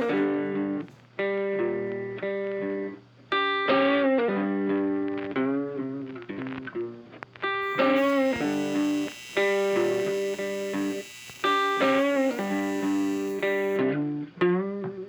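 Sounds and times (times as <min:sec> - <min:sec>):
electric guitar playing: 0:07.6 - 0:13.8.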